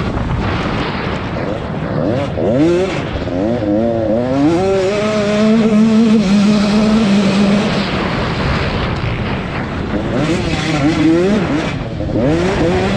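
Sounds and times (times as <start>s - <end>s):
racing motorcycle engines: 0.0s - 12.9s.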